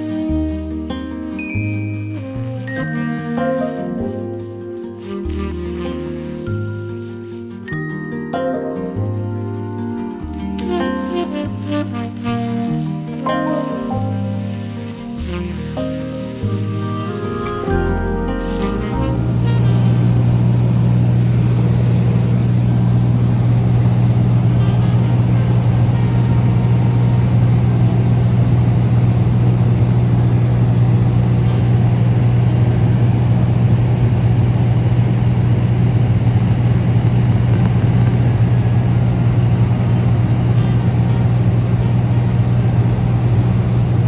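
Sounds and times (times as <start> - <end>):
propeller plane engine droning: 9.1 - 44.0.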